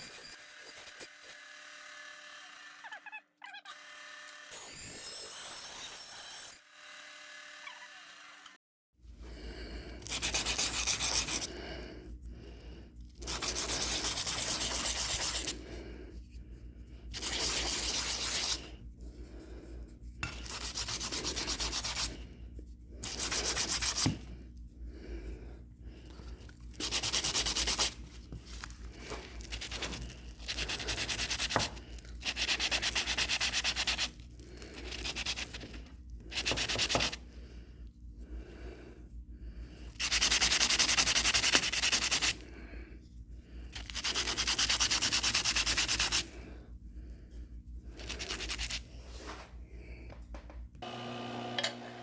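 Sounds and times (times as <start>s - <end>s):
hand sanding on abrasive paper: 10.0s - 11.7s, 13.0s - 16.4s, 17.1s - 22.3s, 23.0s - 24.3s, 26.7s - 37.3s, 39.9s - 42.5s, 43.8s - 46.4s, 47.7s - 49.3s.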